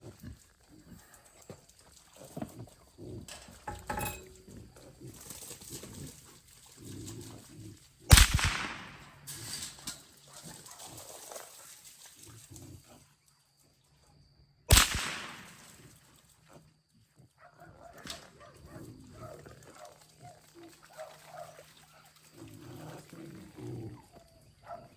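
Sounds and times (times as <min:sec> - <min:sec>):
hogs grunting quietly: 0:02.1 - 0:08.1, 0:17.2 - 0:24.9
rifle shots: 0:08.1 - 0:09.4, 0:14.7 - 0:15.9.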